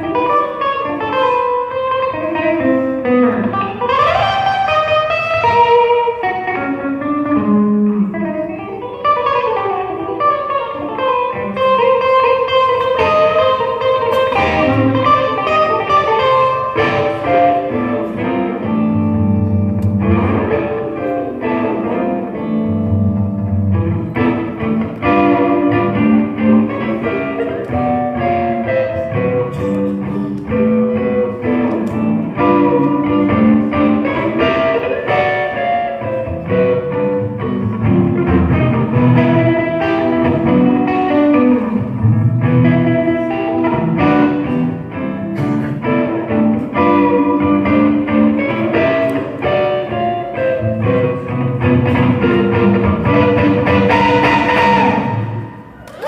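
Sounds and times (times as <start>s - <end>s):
electric guitar solo: 0.0s - 56.0s.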